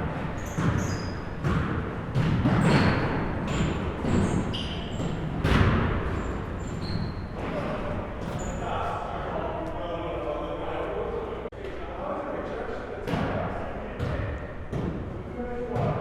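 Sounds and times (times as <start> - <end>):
basketballs bouncing on gym floor: 0.0 - 8.5, 14.0 - 15.1, 15.7 - 16.0
sneakers squeaking on court: 0.1 - 8.7.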